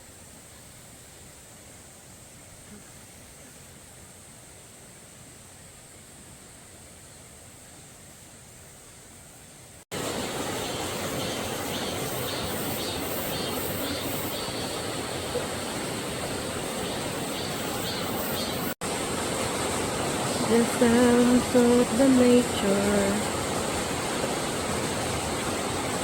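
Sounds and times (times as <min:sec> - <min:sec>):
river water rushing: 0:09.9 - 0:26.0.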